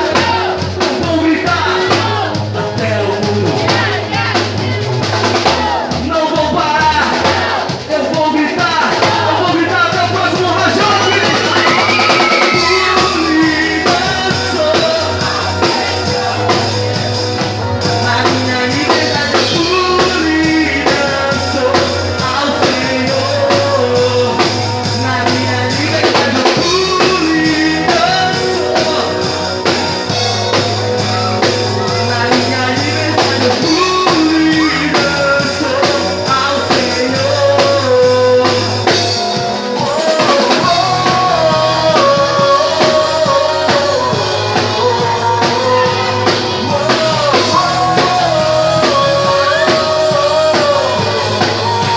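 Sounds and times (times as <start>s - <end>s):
person singing: 0.0s - 51.9s
rock band playing: 0.0s - 51.9s.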